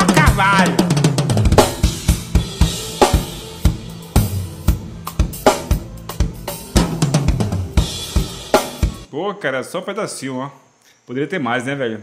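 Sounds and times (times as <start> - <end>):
bass drum and snare strikes: 0.0 - 9.1
cymbal crashes: 1.4 - 9.1.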